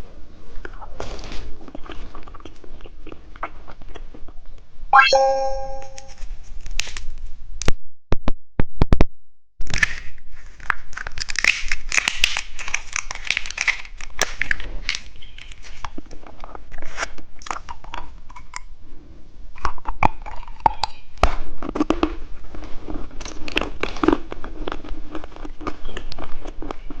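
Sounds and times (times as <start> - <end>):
candy crunching and chewing: 10.6 - 18.7, 19.6 - 27.0.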